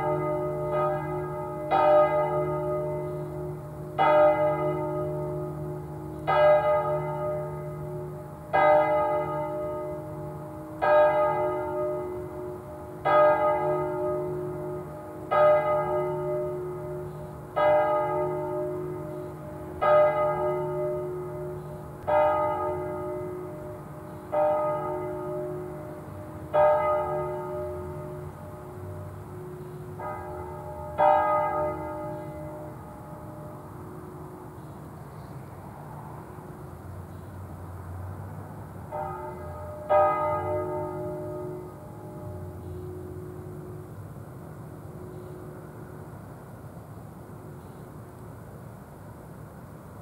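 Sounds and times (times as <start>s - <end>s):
church bell tolling: 0.0s - 34.6s, 38.9s - 43.9s.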